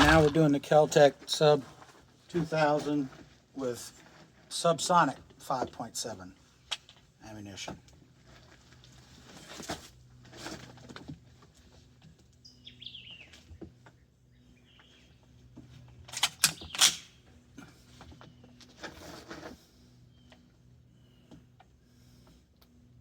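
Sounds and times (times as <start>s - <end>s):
suppressed gunshots: 0.0s - 0.5s
bird chirping: 12.4s - 13.4s.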